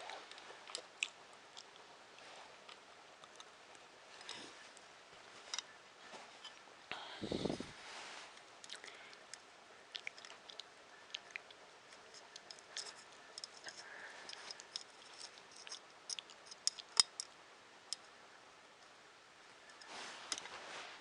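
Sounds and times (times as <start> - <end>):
small parts clicking and tapping: 11.9 - 18.1.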